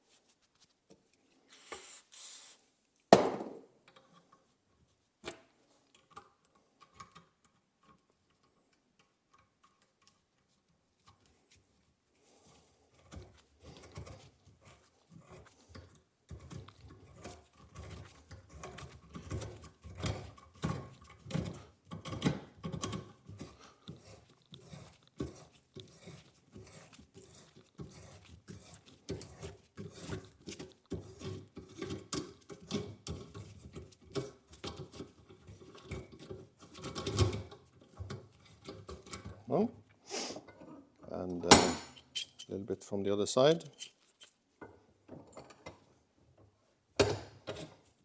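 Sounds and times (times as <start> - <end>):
hand reamer scraping in steel: 23.2 - 39.2, 41.4 - 42.6, 43.6 - 44.4.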